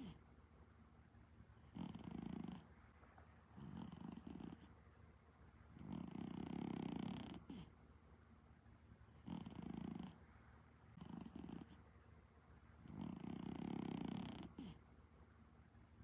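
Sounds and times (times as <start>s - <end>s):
cat snoring: 0.0s - 0.2s, 1.6s - 2.7s, 3.6s - 4.7s, 5.8s - 7.7s, 9.2s - 10.2s, 11.0s - 11.8s, 12.8s - 14.8s.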